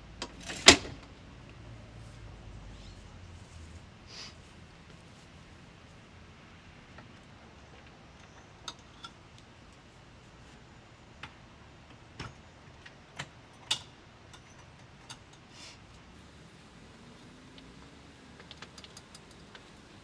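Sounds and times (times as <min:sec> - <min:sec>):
light clicks and knocks: 0:16.2 - 0:20.0
small ticks: 0:16.2 - 0:20.0.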